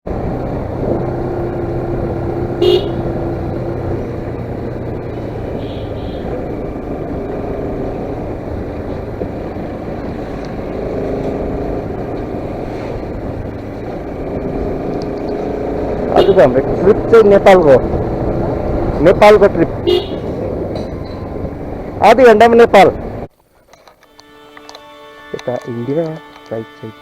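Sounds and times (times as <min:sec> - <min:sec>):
road noise: 0:00.0 - 0:27.0
motorcycle engine running: 0:00.1 - 0:22.1
motorcycle horn toot: 0:02.6 - 0:03.1, 0:05.6 - 0:06.4, 0:16.1 - 0:16.5, 0:19.8 - 0:20.3.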